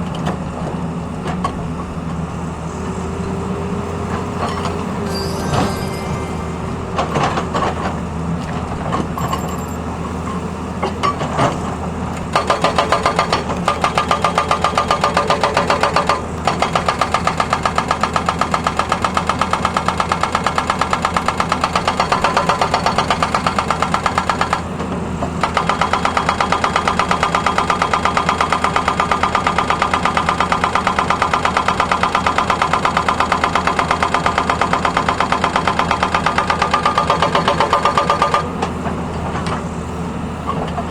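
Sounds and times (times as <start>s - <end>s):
excavator engine running: 0.0s - 40.9s
hydraulic breaker hammering: 12.2s - 24.7s, 25.4s - 39.7s.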